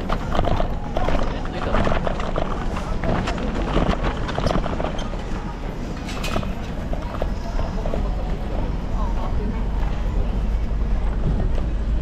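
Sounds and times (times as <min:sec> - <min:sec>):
indistinct voices of passers-by: 0:00.0 - 0:12.0
steady low rumble: 0:00.0 - 0:12.0.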